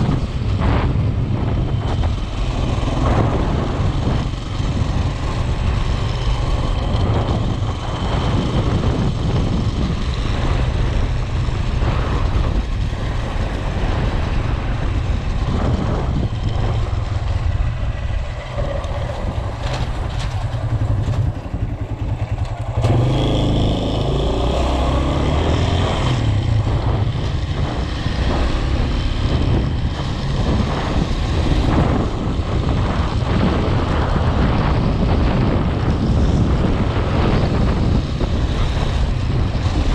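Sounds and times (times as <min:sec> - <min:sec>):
vehicle engine and road rumble: 0:00.0 - 0:39.9
wind buffeting microphone: 0:00.0 - 0:39.9.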